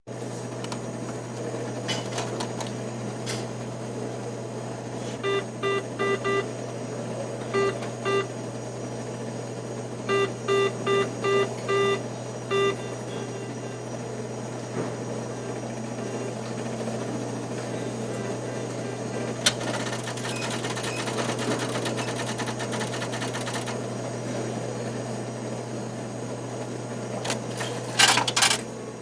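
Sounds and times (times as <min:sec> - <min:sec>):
machine low hum: 0:00.1 - 0:29.0
keypad beeps: 0:05.2 - 0:06.5, 0:07.4 - 0:08.3, 0:10.1 - 0:13.5, 0:19.6 - 0:23.8.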